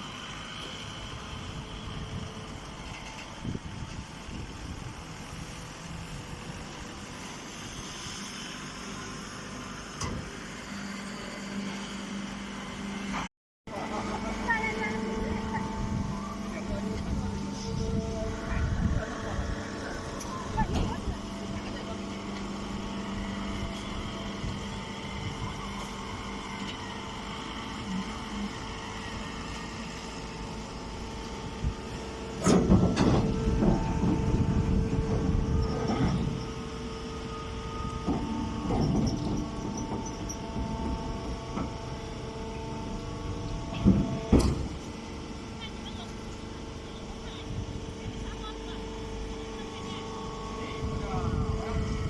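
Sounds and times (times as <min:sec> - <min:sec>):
round baler running: 0:00.0 - 0:52.0
steady low hum: 0:11.0 - 0:52.0.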